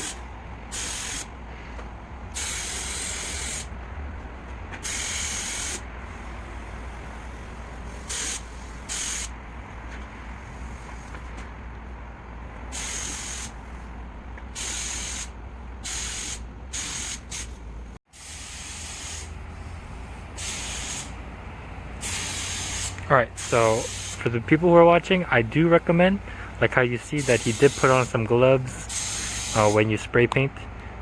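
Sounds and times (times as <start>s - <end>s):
paint spray gun hissing: 0.0s - 1.3s, 2.4s - 3.7s, 4.8s - 9.3s, 12.7s - 13.7s, 14.6s - 15.3s, 15.9s - 19.3s, 20.4s - 21.1s, 22.0s - 24.2s, 27.2s - 28.1s, 28.8s - 29.8s
steady low hum: 0.0s - 31.0s.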